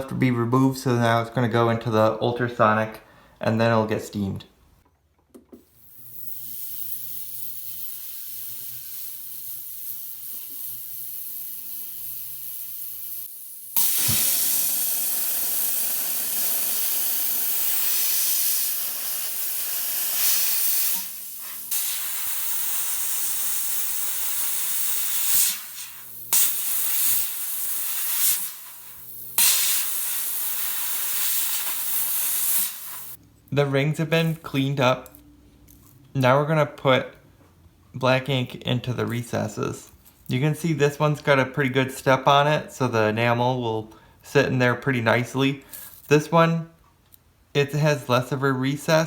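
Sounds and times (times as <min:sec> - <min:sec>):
steam cleaner hissing: 0:07.8 - 0:11.2, 0:12.0 - 0:33.2
ultrasonic cleaner humming: 0:13.8 - 0:33.2.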